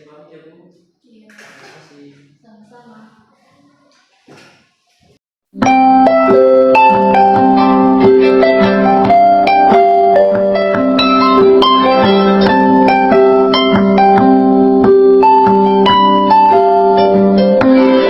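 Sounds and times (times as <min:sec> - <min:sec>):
plucked melody over repeating bass line: 0:05.6 - 0:18.0.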